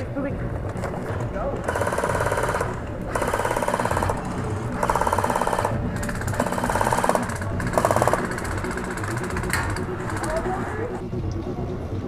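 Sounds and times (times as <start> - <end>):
airsoft rifle firing full auto: 1.6 - 10.4.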